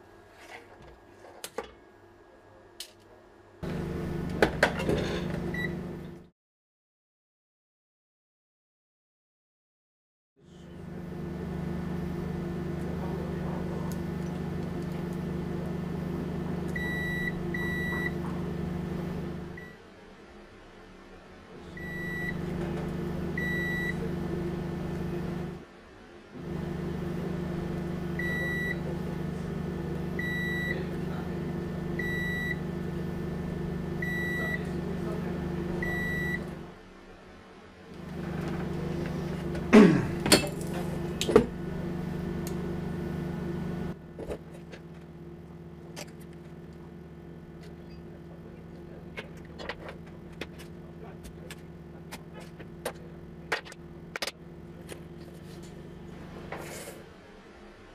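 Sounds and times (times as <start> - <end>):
inverter humming: 3.6 - 6.3, 10.4 - 19.8, 21.6 - 25.6, 26.3 - 36.8, 37.9 - 57.0.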